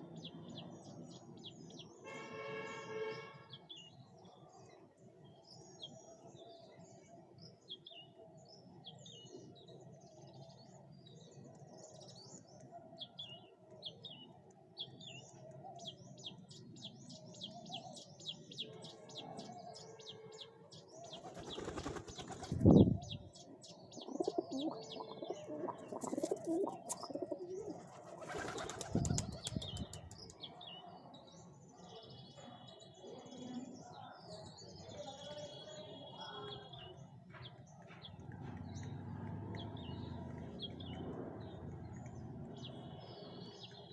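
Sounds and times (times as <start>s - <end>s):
small birds chirping: 0.0s - 43.9s
pigeons flapping wings: 21.2s - 22.6s, 26.0s - 27.2s, 27.8s - 30.3s
pigeons cooing: 24.0s - 29.6s.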